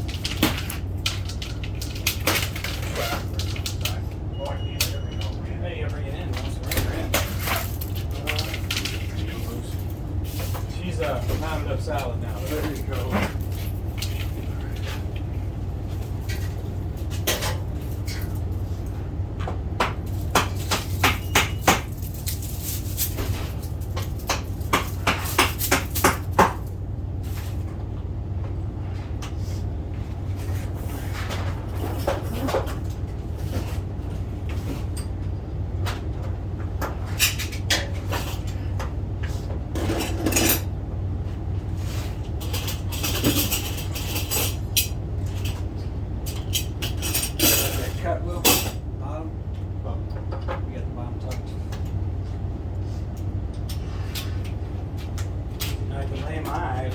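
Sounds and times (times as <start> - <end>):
steady low hum: 0.0 - 56.9
metal tools clinking and knocking: 42.4 - 45.6.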